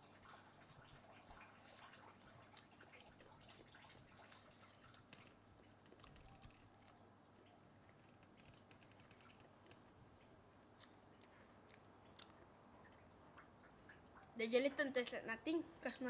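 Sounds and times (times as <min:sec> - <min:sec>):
person quietly chewing: 0:02.1 - 0:14.3.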